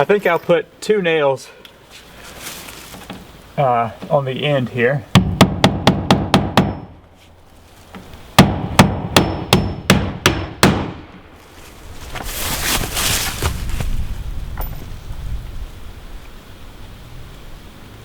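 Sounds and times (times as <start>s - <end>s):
hammer driving nails into wood: 5.2s - 6.9s.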